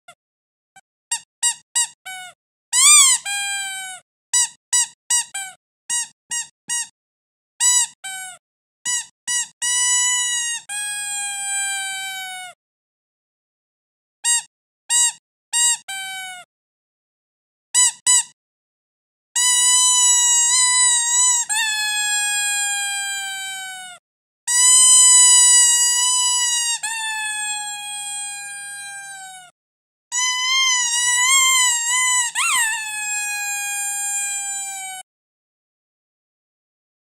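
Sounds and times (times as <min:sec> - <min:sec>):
squeaky dog toy squeaking: 0:01.1 - 0:06.9, 0:07.6 - 0:12.4, 0:14.3 - 0:16.4, 0:17.8 - 0:18.4, 0:19.4 - 0:29.5, 0:30.1 - 0:35.0.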